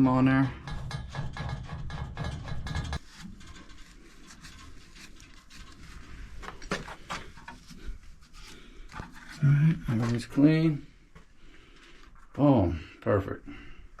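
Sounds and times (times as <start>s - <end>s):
metal fittings clicking and knocking: 0.0s - 5.8s.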